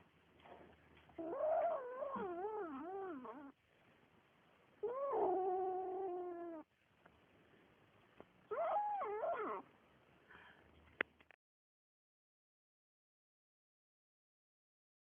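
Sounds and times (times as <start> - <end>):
kitten yowling: 1.2 - 3.5, 4.8 - 6.6, 8.5 - 9.6.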